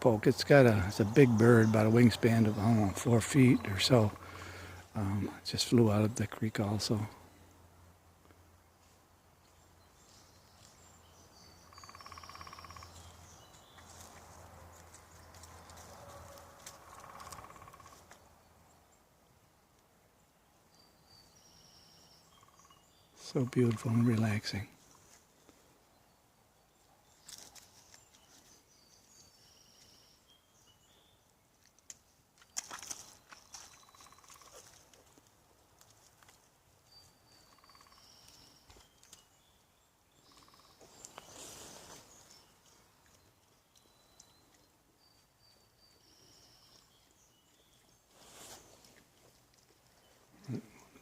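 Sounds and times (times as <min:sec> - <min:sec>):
birds calling: 0:00.0 - 0:07.1, 0:09.6 - 0:18.9, 0:32.4 - 0:35.2, 0:35.9 - 0:51.0
crackling rustle: 0:12.8 - 0:18.3, 0:27.1 - 0:29.2, 0:31.6 - 0:37.1, 0:40.3 - 0:45.2, 0:46.7 - 0:51.0.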